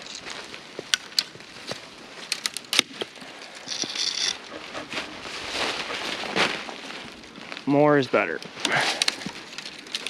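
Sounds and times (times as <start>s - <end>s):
branches rustling: 0.0s - 10.0s
dry twigs snapping: 0.9s - 4.3s, 8.6s - 10.0s.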